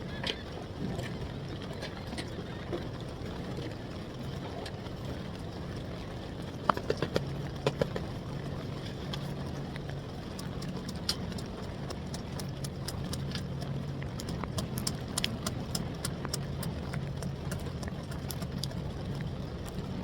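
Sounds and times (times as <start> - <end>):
low engine hum: 0.0 - 20.0
wind: 0.0 - 20.0.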